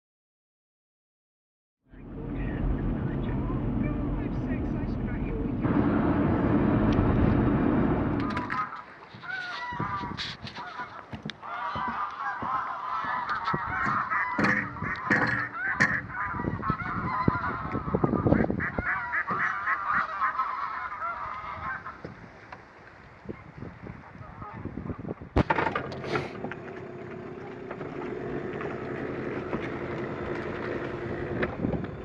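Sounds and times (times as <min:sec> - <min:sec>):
geese honking: 0:08.1 - 0:22.2.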